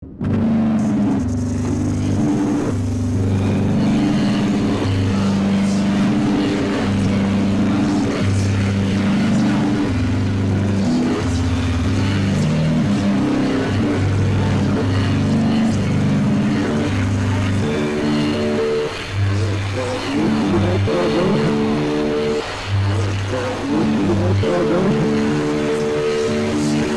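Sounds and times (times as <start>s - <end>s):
distorted guitar low notes: 0.0s - 26.9s.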